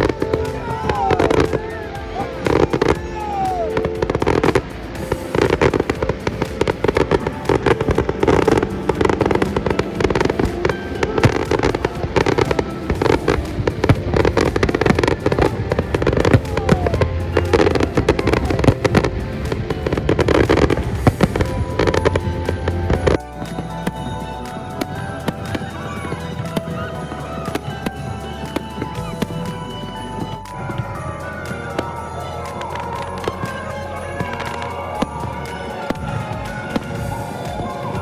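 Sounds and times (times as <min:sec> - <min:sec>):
fireworks bangs and crackles: 0:00.0 - 0:38.0
music playing: 0:00.0 - 0:38.0.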